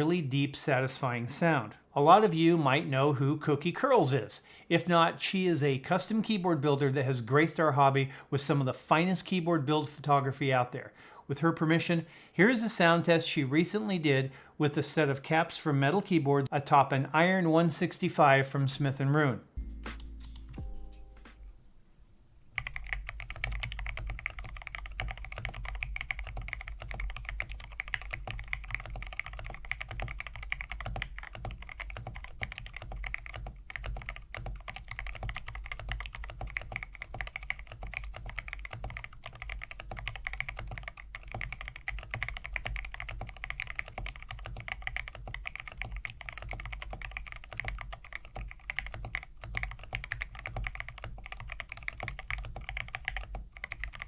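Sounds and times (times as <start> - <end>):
fast typing on mechanical keyboard: 22.6 - 54.0.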